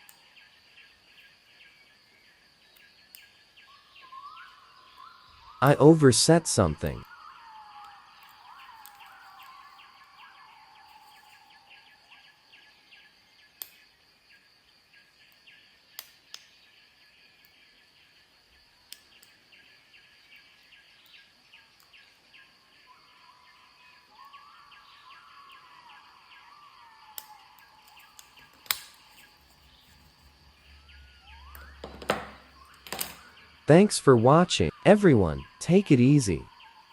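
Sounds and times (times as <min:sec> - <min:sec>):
lock pick metallic clicks: 0:27.2 - 0:29.0, 0:31.5 - 0:33.3
high chirping: 0:27.2 - 0:36.9.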